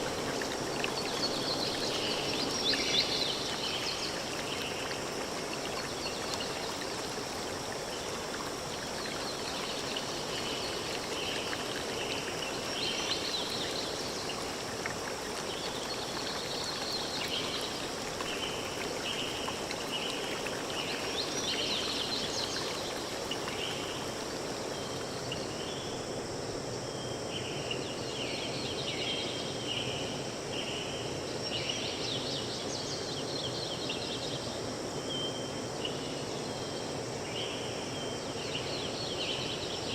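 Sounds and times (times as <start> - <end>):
running water: 0.0 - 26.0.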